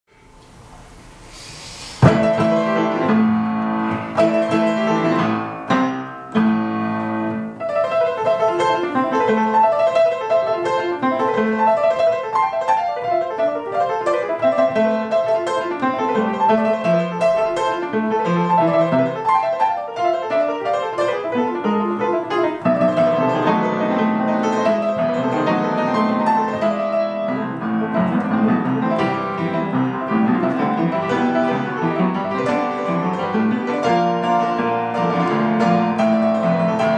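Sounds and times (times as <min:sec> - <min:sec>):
piano music: 0:02.0 - 0:36.9.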